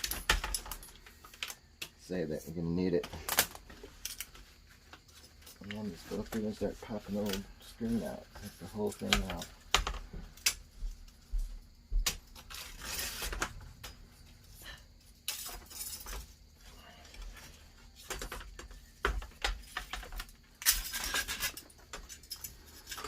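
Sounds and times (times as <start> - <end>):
mesh rustling scrapes: 12.5 - 13.5.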